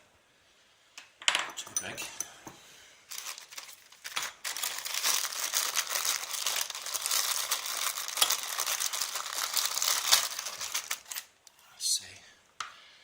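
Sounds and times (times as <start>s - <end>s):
hands rummaging through tools: 3.1s - 11.3s.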